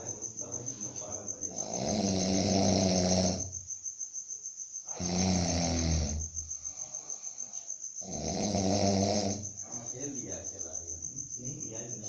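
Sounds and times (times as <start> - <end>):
quiet breathing: 0.0 - 3.6, 6.1 - 8.0, 9.3 - 10.5
crickets chirping: 0.0 - 12.0
man snoring: 1.4 - 3.6, 4.9 - 9.9.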